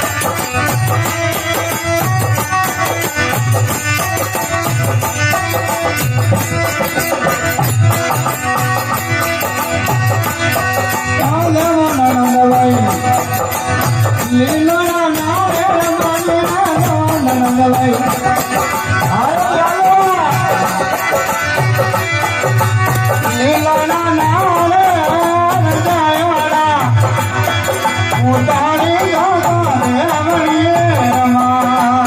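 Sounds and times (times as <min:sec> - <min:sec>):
folk devotional music: 0:00.0 - 0:32.0
steady drum beat: 0:00.0 - 0:32.0.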